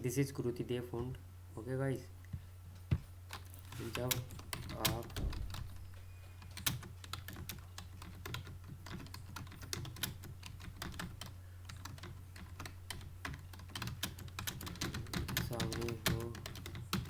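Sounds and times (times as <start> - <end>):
steady low hum: 0.0 - 17.0
fast keyboard typing: 3.3 - 5.8, 6.4 - 17.0.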